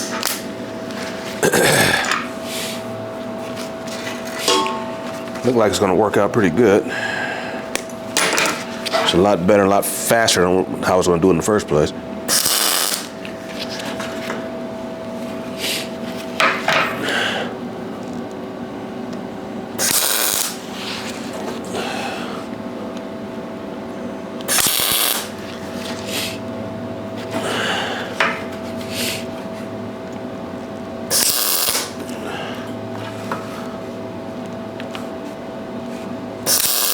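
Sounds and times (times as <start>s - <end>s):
welding machine humming: 0.0s - 5.8s, 12.3s - 16.3s, 19.8s - 21.0s, 24.4s - 26.4s, 31.0s - 32.4s, 36.4s - 36.9s
crackling hiss of tack welds: 12.3s - 13.2s, 19.8s - 20.7s, 24.5s - 25.4s, 31.1s - 32.0s, 36.5s - 36.9s.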